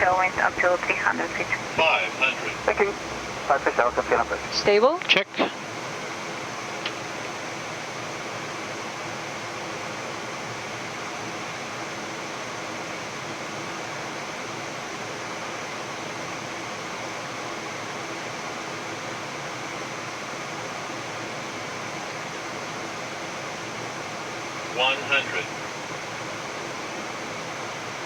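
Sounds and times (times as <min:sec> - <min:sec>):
rushing air noise in cockpit: 0:00.0 - 0:28.0.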